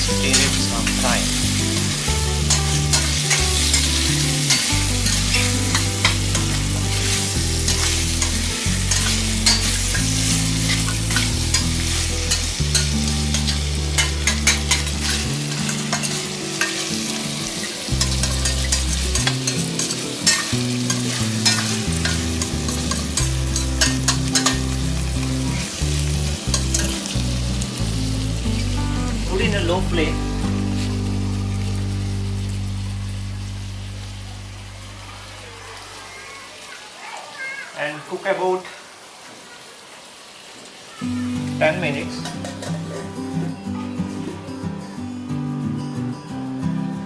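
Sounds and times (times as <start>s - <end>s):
chicken sizzling in a pan: 0.0s - 44.4s
spatula scraping a pan: 2.5s - 16.8s, 18.0s - 24.6s.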